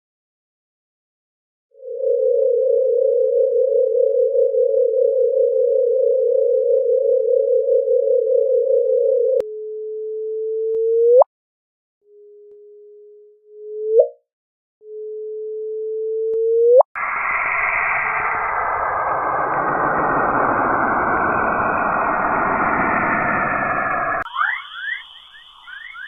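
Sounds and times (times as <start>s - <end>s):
pure electronic tone: 1.8s - 11.2s, 14.8s - 26.0s
warbling electronic tone: 16.6s - 26.0s
upward electronic sweep: 17.0s - 26.0s.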